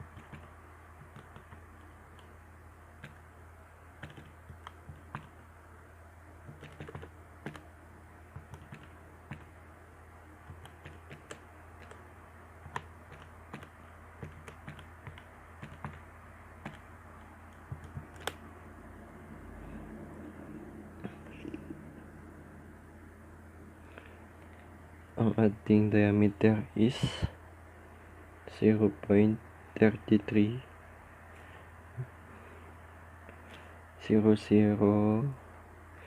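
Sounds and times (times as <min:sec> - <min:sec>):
steady low hum: 0:00.0 - 0:36.0
calculator keys clicking: 0:04.0 - 0:05.3, 0:06.5 - 0:07.6, 0:08.4 - 0:09.5, 0:10.5 - 0:12.0, 0:12.6 - 0:16.0, 0:17.5 - 0:18.4.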